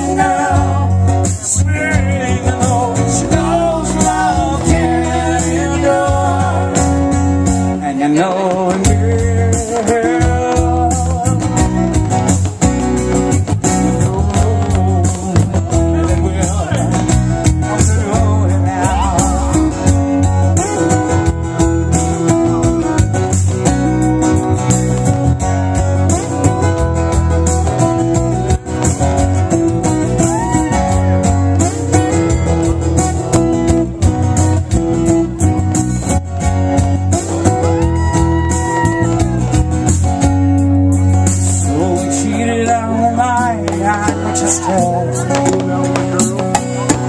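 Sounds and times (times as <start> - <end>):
bass and drums: 0.0 - 47.0
guitar lead with bent notes: 0.0 - 47.0.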